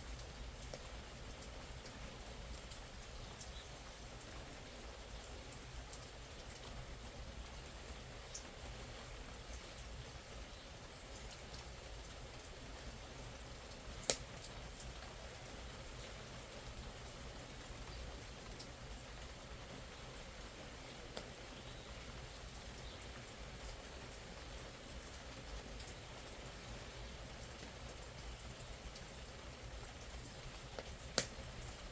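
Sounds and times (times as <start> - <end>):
rain falling: 0.0 - 31.9
fire popping and crackling: 13.6 - 16.1, 20.8 - 21.4, 30.0 - 31.9.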